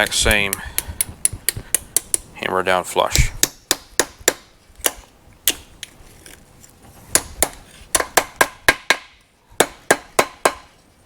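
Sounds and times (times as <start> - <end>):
hammer striking steel on anvil: 7.1 - 10.7.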